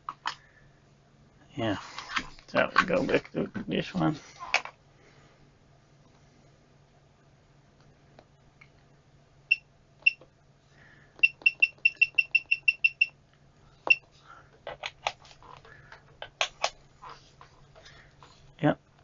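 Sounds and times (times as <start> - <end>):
multimeter beeping: 9.5 - 10.2, 11.2 - 13.2.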